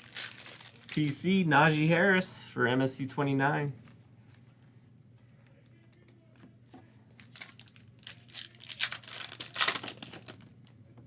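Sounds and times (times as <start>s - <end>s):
wrapper tearing and crinkling: 0.0s - 1.2s, 7.2s - 10.5s.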